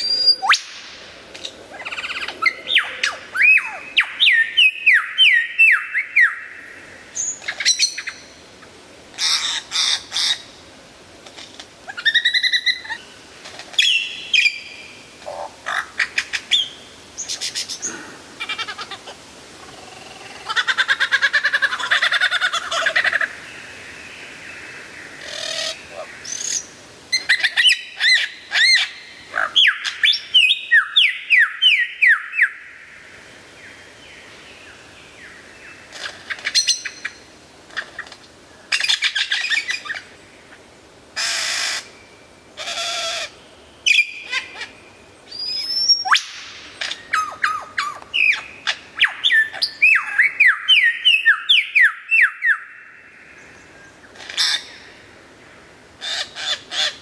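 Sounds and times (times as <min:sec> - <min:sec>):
bird whistling song: 0:00.0 - 0:00.7, 0:01.8 - 0:06.5, 0:27.2 - 0:32.6, 0:45.3 - 0:52.8.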